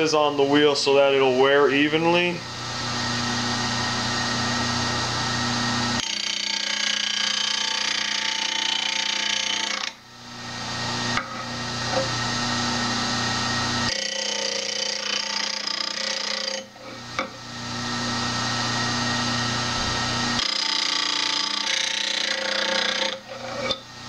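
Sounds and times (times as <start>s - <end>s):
bench grinder motor hum: 2.4s - 24.0s
tool grinding against wheel: 20.4s - 23.8s.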